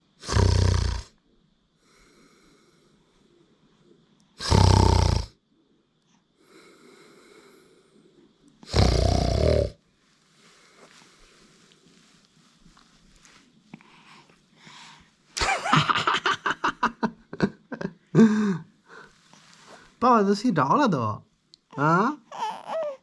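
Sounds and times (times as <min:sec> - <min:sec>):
man snoring: 0:00.2 - 0:01.1, 0:04.4 - 0:05.3, 0:08.6 - 0:09.8.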